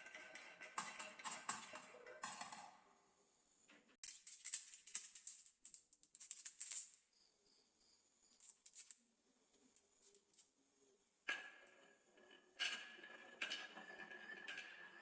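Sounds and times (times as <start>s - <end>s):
marbles clattering down wooden run: 12.4s - 15.0s.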